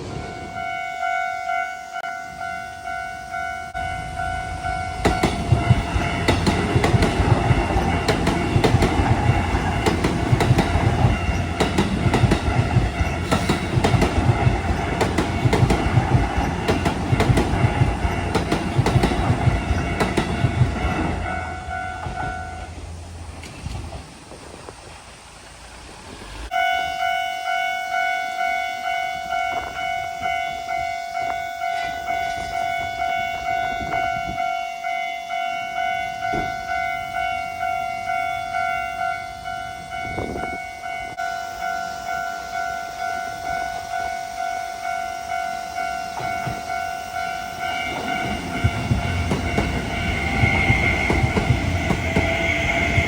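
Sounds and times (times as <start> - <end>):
train wheels clacking: 4.5 - 22.8, 45.8 - 53.0.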